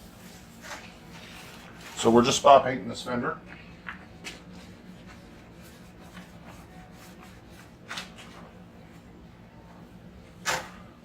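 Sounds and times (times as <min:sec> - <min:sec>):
faint rubbing and handling: 0:00.0 - 0:02.4, 0:04.5 - 0:09.0.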